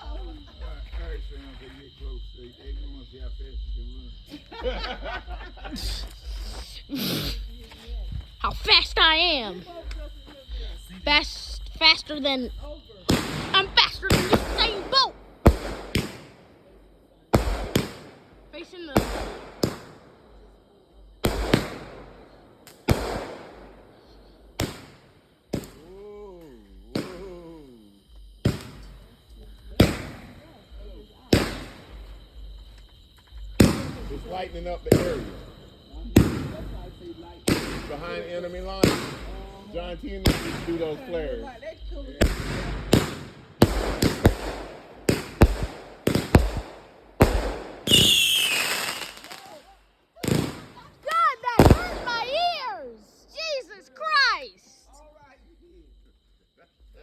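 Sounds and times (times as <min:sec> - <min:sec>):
firework bangs with rumble: 0:12.8 - 0:16.4, 0:17.3 - 0:20.4, 0:21.2 - 0:25.9, 0:26.8 - 0:27.4, 0:28.4 - 0:49.4, 0:50.2 - 0:50.8, 0:51.6 - 0:52.3.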